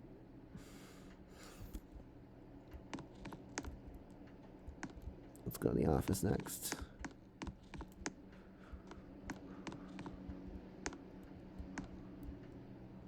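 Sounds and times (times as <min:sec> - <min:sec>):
steady low hum: 0:00.0 - 0:13.0
light clicks: 0:06.3 - 0:12.6.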